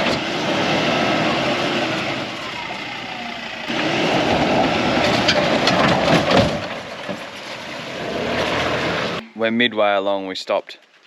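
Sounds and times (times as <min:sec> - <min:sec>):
vehicle engine running: 0:00.0 - 0:05.8
knocks and clatter: 0:04.2 - 0:09.2.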